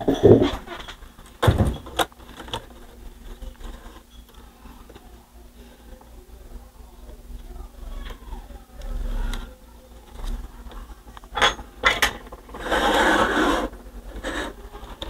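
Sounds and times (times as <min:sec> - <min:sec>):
scraping rub: 0:12.5 - 0:15.0.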